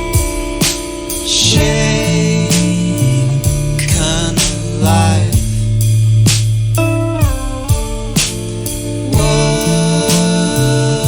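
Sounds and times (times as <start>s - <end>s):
drum hits: 0.0s - 10.8s
band playing a song: 0.0s - 11.0s.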